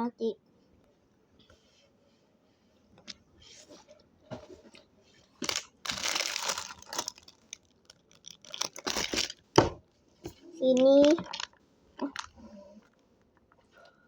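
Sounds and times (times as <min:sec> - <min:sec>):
bread wrapper crinkling and tearing: 0:05.4 - 0:09.5, 0:10.8 - 0:12.4.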